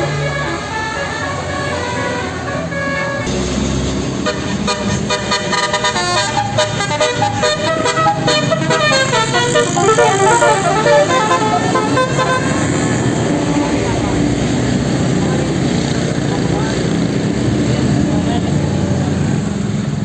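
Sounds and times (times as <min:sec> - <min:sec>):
musical air horn melody: 0:00.0 - 0:03.5, 0:04.1 - 0:13.1.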